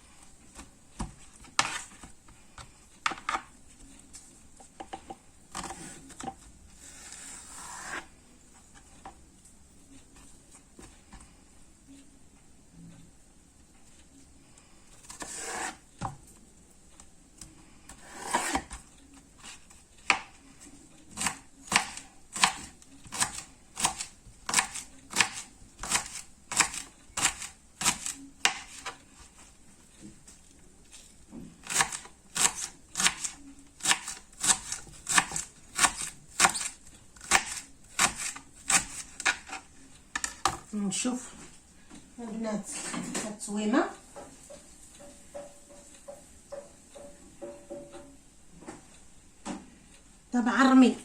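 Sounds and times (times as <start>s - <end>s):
soft scraping handling sounds: 0.0s - 11.6s
knife chopping food: 1.0s - 2.1s, 17.9s - 18.8s, 21.1s - 29.4s, 31.5s - 39.6s.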